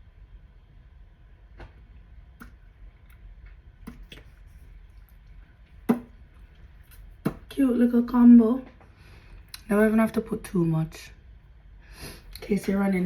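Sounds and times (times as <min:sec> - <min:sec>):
faint sharp clicks and taps: 0:02.4 - 0:07.6.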